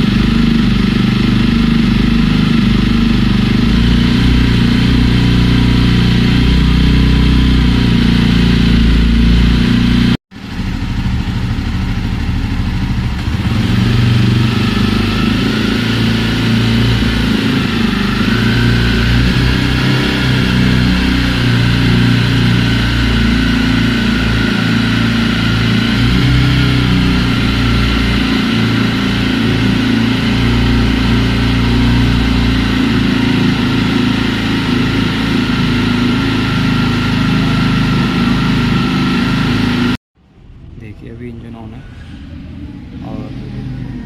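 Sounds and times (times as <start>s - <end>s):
motorcycle engine running: 0.0s - 44.0s.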